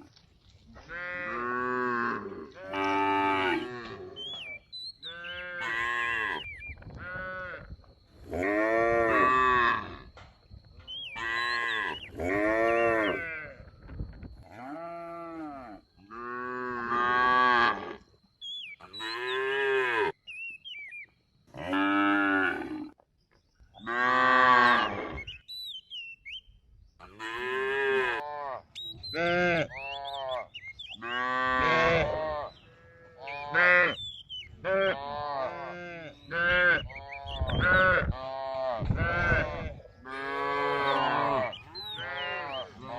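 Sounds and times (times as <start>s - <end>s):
cattle mooing: 0.9s - 4.2s, 29.2s - 34.0s, 34.6s - 42.9s.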